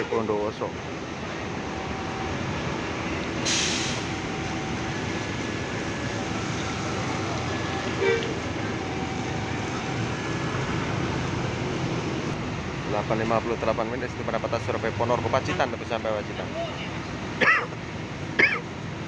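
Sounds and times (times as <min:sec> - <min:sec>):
bus engines running: 0:00.0 - 0:19.0
short hiss: 0:03.4 - 0:04.1.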